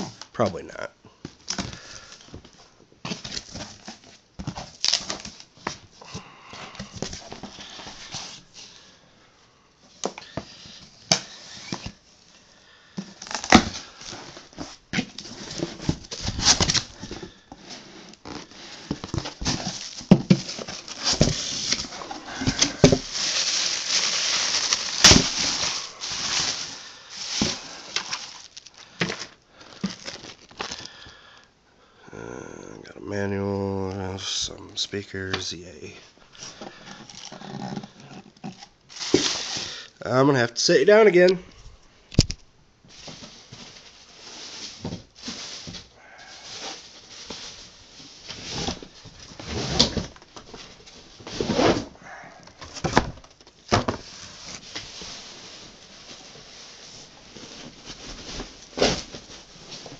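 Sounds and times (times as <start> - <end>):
tape and cardboard tearing: 13.2 - 14.2, 17.8 - 29.2.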